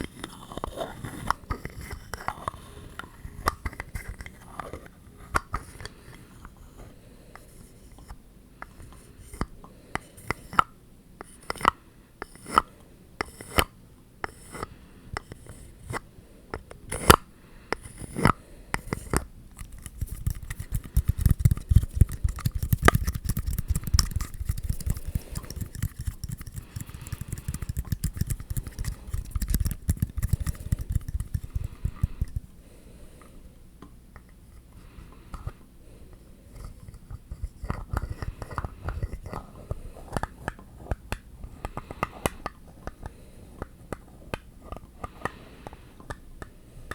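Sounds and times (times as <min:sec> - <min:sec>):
fast continuous scratching: 0:19.7 - 0:32.4.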